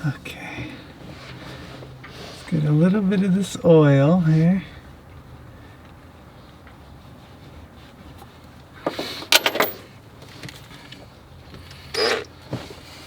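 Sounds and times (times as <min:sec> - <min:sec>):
small metal tools clattering: 0:08.9 - 0:09.9.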